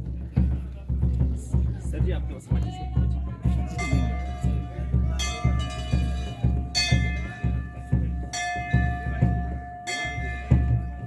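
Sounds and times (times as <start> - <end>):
low thumping beat: 0.0 - 11.0
temple bells ringing: 3.4 - 11.0.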